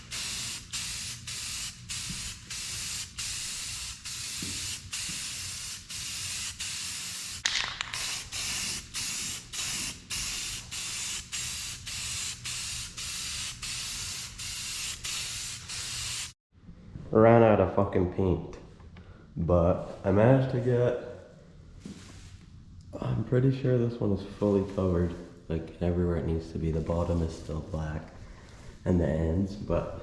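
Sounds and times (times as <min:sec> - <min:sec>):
spray paint can spraying: 0:00.0 - 0:16.4.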